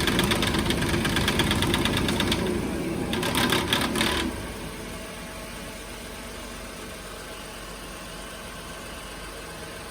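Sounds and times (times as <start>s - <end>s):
engine clatter: 0.0s - 5.2s
car engine idling hum: 0.0s - 9.9s.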